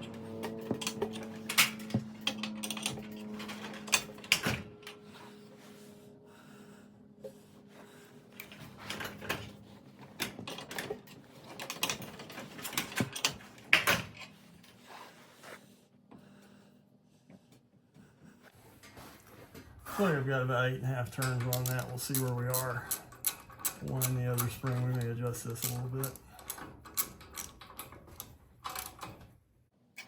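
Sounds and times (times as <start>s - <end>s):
metal winding bars clanking: 0.5s - 4.6s, 21.0s - 29.2s.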